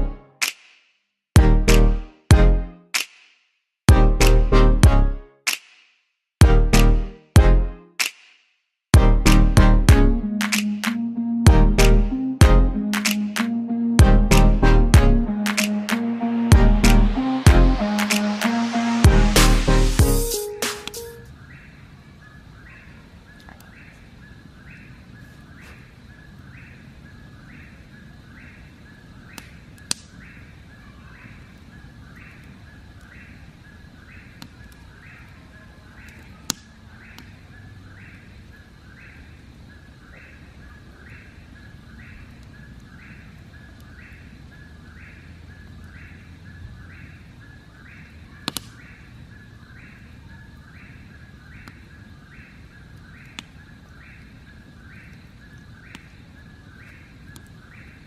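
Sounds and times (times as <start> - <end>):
continuous high tone: 9.0 - 21.4
sharp clicks: 48.5 - 48.7.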